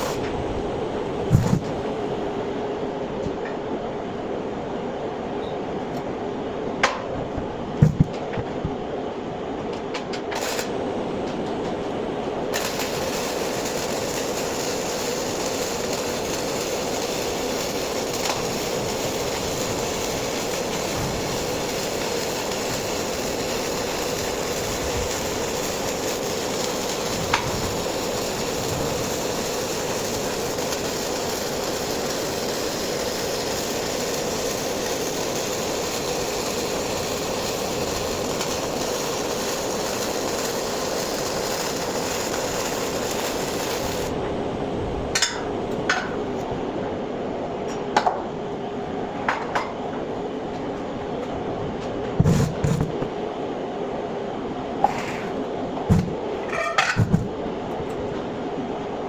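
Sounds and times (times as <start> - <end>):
welding arc sizzling hiss: 0.0 - 3.0, 9.9 - 46.6, 51.4 - 53.2.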